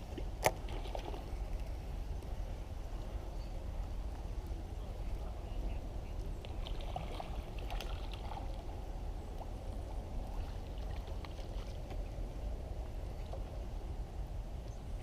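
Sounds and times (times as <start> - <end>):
water lapping: 6.1 - 12.6.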